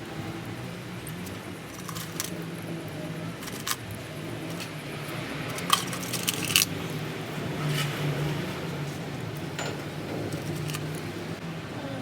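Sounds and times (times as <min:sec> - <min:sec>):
metal tools clinking: 0:01.7 - 0:02.4, 0:03.4 - 0:03.8, 0:05.5 - 0:06.8, 0:09.4 - 0:11.1.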